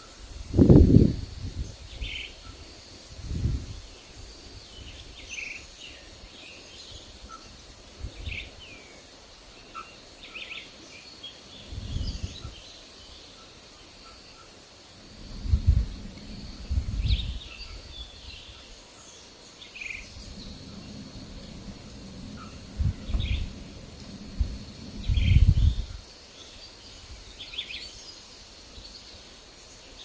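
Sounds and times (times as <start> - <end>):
faint insect drone: 0.0 - 30.0
wind gusts rumbling: 0.3 - 5.2, 6.9 - 8.7, 11.6 - 12.6, 14.9 - 18.8, 19.8 - 26.2
birds chirping: 4.0 - 30.0.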